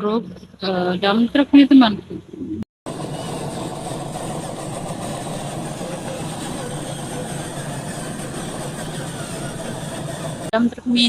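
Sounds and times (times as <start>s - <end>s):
vehicle engine running: 2.9s - 10.6s.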